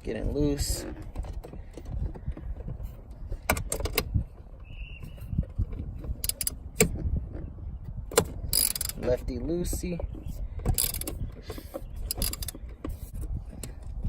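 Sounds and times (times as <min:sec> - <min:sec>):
low rumbling handling noise: 0:00.0 - 0:14.0
ratchet clicks and knocks: 0:05.6 - 0:07.0, 0:08.1 - 0:14.0.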